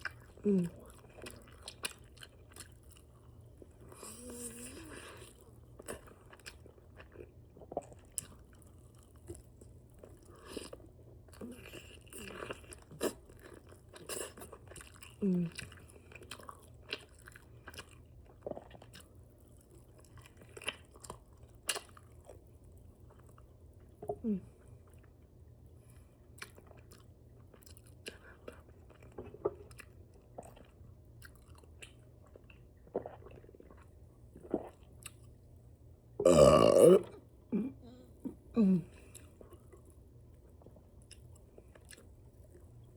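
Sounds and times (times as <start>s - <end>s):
open-mouth chewing: 0.0s - 22.4s
low steady hum: 0.0s - 42.9s.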